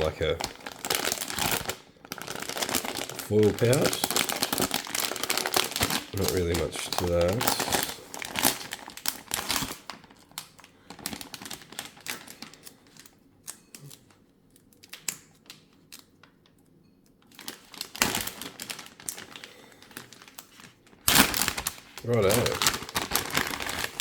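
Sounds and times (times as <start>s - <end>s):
foil packaging crinkling: 0.0s - 16.6s, 17.2s - 24.0s
light clicks and taps of packaging: 0.0s - 24.0s.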